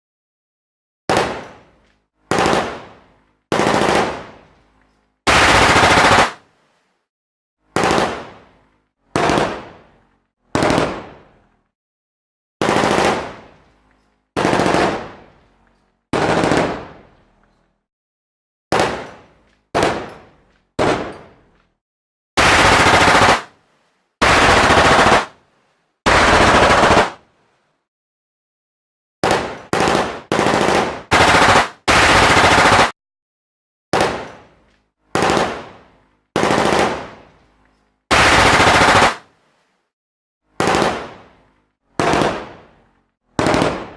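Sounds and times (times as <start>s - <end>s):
machine gun firing bursts: 2.3s - 2.9s, 3.5s - 4.3s, 5.3s - 6.4s, 7.8s - 8.4s, 9.2s - 9.7s, 10.6s - 11.1s, 12.6s - 13.4s, 14.4s - 15.2s, 16.1s - 17.0s, 22.4s - 23.5s, 24.2s - 25.4s, 26.1s - 27.2s, 29.2s - 32.9s, 35.1s - 35.8s, 36.4s - 37.2s, 38.1s - 39.3s, 40.6s - 41.2s, 42.0s - 42.6s, 43.4s - 43.9s.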